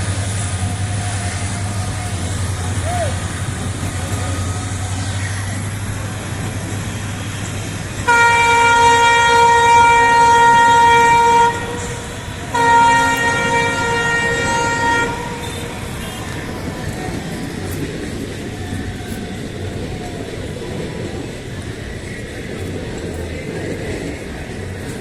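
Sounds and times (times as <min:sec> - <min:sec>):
train running noise: 0:00.0 - 0:25.0
locomotive air horn blasts: 0:08.0 - 0:16.6.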